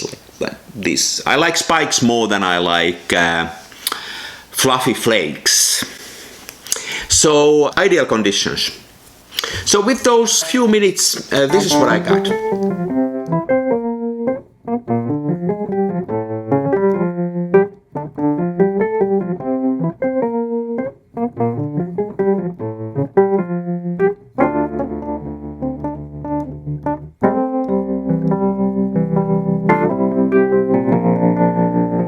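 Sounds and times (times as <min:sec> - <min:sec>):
keyboard playing notes and chords: 0:10.4 - 0:32.0.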